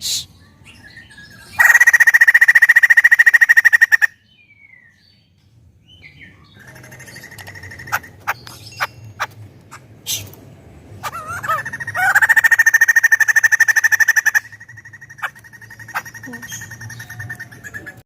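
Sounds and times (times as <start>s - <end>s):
bird rattling trill: 11.7s - 17.4s.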